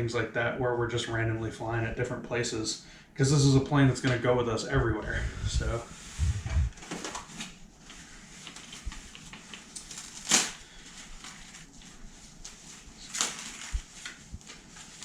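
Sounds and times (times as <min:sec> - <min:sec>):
packaging crinkling rustle: 0:06.7 - 0:15.0.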